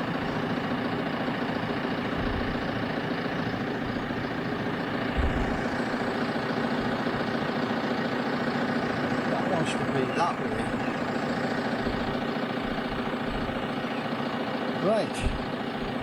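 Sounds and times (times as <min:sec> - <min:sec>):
diesel engine idling: 0:00.0 - 0:16.0
low thump: 0:05.2 - 0:05.6, 0:15.2 - 0:15.5.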